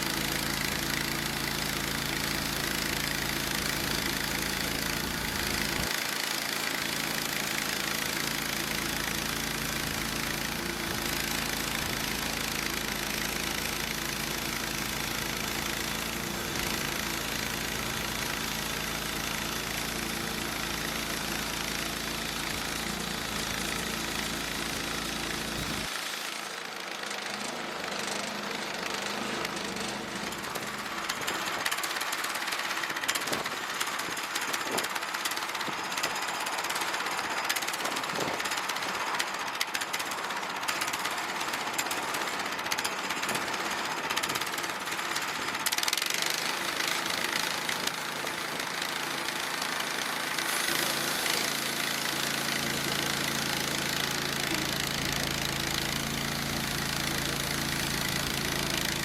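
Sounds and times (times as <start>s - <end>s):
engine hum: 0.0s - 6.0s, 8.3s - 26.0s, 50.6s - 59.0s
bandsaw sawmill cutting log: 0.0s - 59.0s.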